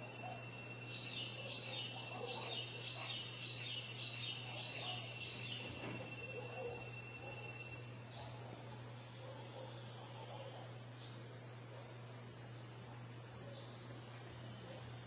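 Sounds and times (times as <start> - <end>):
bird chirping: 0.0 - 8.4.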